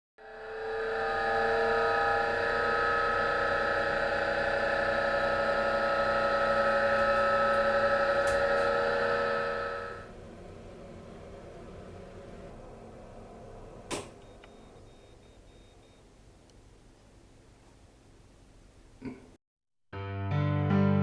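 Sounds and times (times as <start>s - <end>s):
exhaust fan loud rotation noise: 0.2s - 14.1s.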